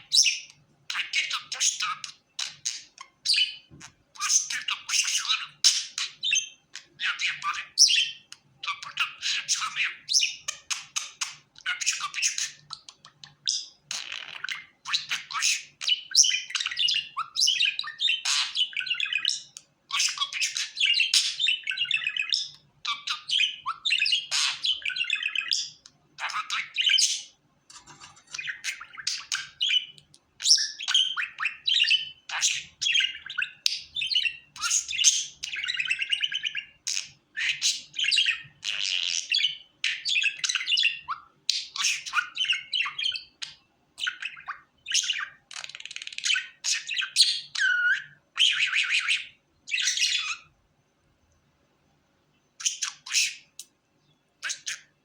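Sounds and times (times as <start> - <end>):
budgerigar chattering: 0.0 - 27.3.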